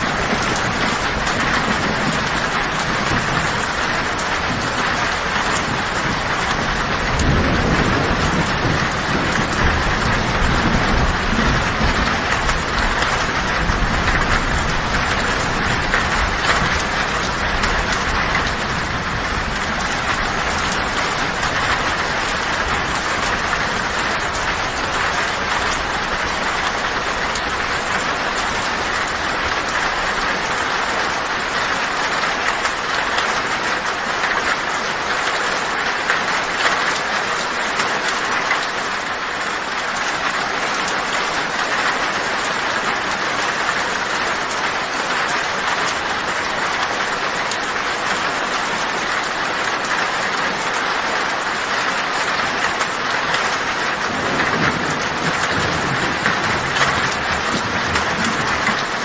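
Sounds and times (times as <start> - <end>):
low rumble of thunder: 0.0 - 33.2, 52.6 - 59.0
heavy rain on a tin roof: 0.0 - 59.0.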